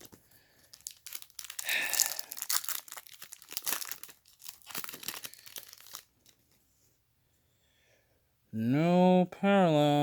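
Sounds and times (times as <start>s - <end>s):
plastic wrapper tearing and crinkling: 0.0s - 6.6s.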